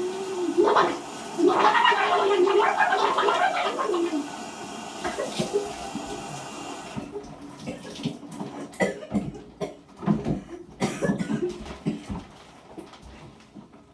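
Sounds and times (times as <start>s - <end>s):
shower water running: 0.0s - 8.8s.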